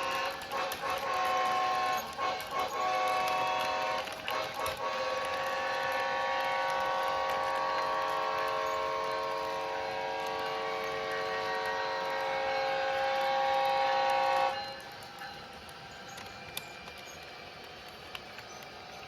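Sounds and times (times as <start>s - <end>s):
train horn chord: 0.0s - 14.9s.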